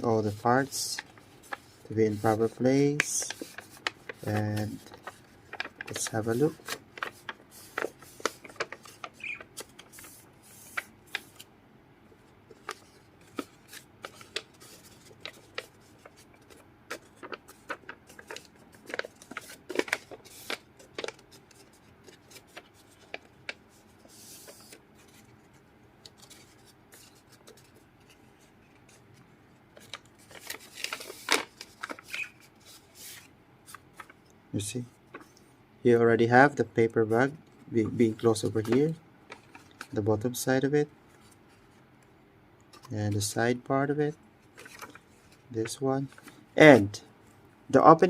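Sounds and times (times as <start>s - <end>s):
paper bag rustling: 0.1s - 11.4s, 12.5s - 25.5s, 29.7s - 34.2s.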